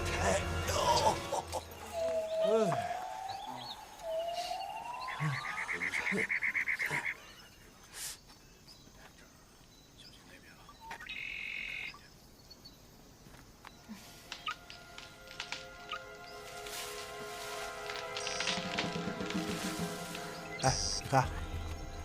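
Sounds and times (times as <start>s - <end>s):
rising whistle call: 1.8s - 5.9s.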